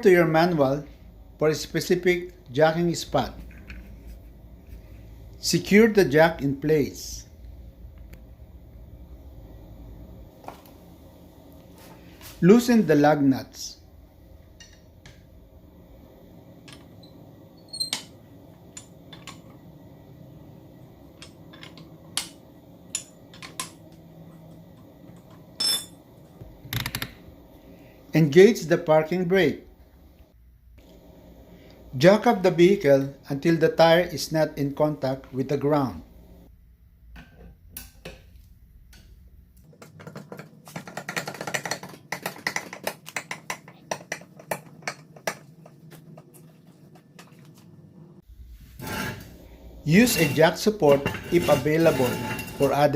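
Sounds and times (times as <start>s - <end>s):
low steady hum: 0.0s - 39.7s.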